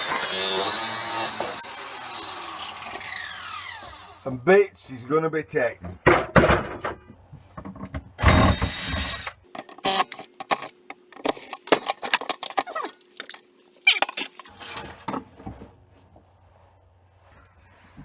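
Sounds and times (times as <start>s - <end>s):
knocks clicks and clatters of parts: 9.6s - 14.5s.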